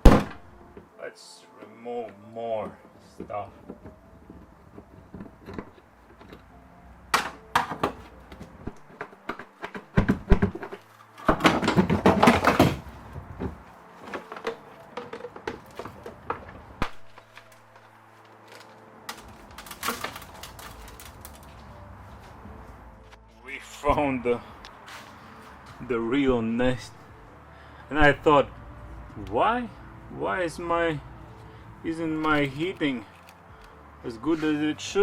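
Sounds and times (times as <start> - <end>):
plastic parts clicking and rattling: 14.0 - 21.6, 32.6 - 33.8.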